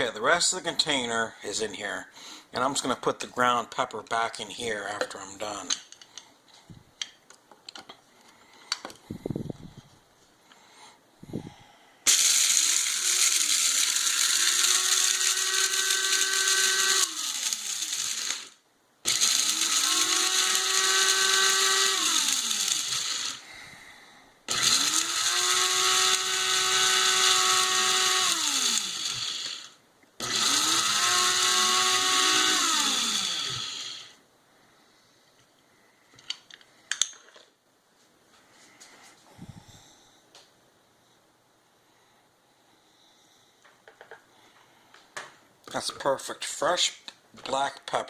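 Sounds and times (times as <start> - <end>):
coffee grinder grinding peppercorns: 12.1 - 23.4, 24.5 - 34.1.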